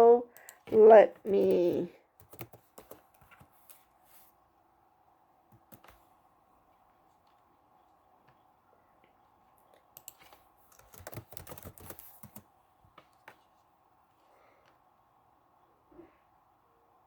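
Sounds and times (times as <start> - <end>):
typing on computer keyboard: 2.2 - 3.5, 5.5 - 6.0, 10.0 - 12.5.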